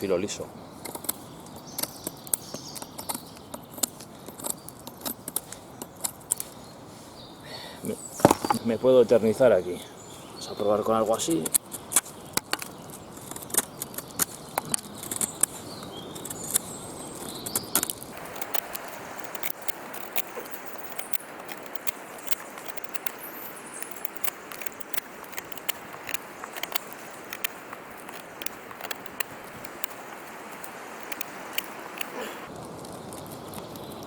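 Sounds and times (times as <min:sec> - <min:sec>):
knife blade scraping wood: 0:18.1 - 0:32.5.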